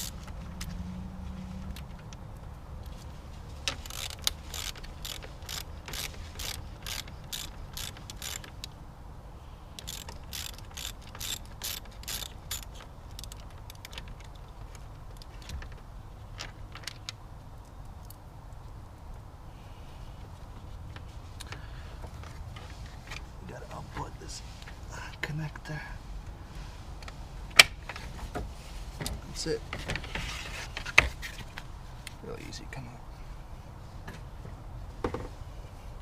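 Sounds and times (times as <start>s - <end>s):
socket ratchet clicking: 0.0s - 0.3s, 3.7s - 8.8s, 9.8s - 14.4s.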